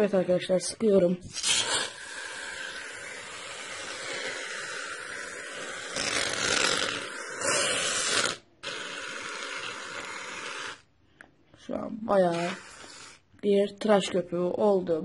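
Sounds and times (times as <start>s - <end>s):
aerosol can spraying with hiss: 1.3s - 10.8s, 12.2s - 13.2s.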